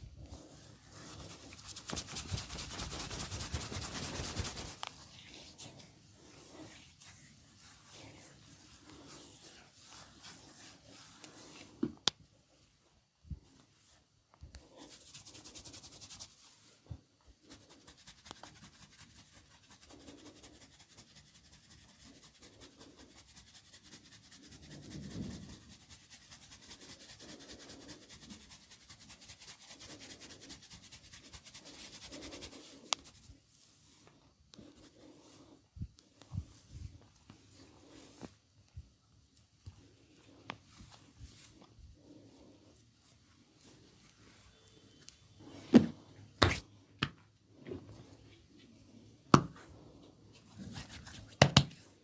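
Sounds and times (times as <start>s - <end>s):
hands rubbing skin: 0.4s - 11.8s, 14.6s - 16.7s, 17.4s - 33.4s, 50.4s - 51.8s.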